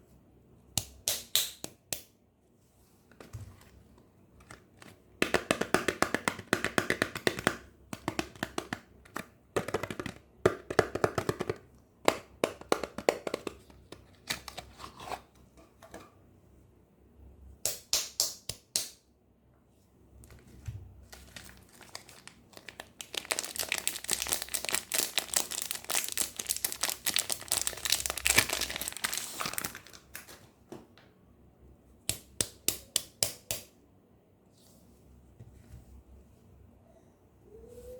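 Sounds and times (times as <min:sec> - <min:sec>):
soap wrappers crinkling and tearing: 0:21.0 - 0:30.5.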